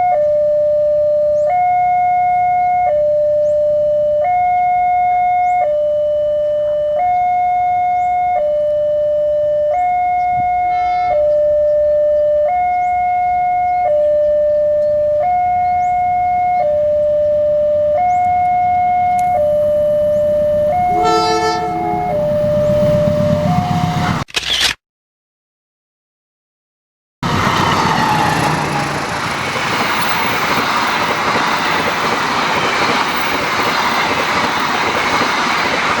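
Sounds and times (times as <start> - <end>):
two-tone level-crossing siren: 0.0 - 24.2
train rumbling: 18.0 - 24.3, 27.2 - 36.0
train horn: 19.2 - 24.2.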